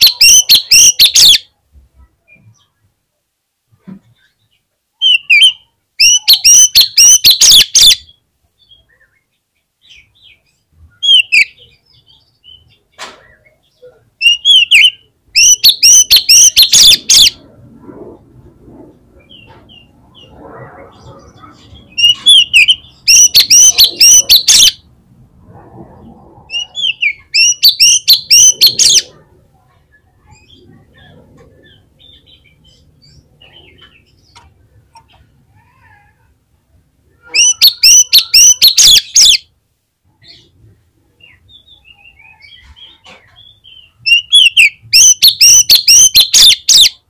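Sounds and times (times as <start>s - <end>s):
songbird whistling and chattering: 0.0s - 1.4s, 5.0s - 8.2s, 11.0s - 17.4s, 21.0s - 24.8s, 26.5s - 29.2s, 37.1s - 39.5s, 41.2s - 47.0s.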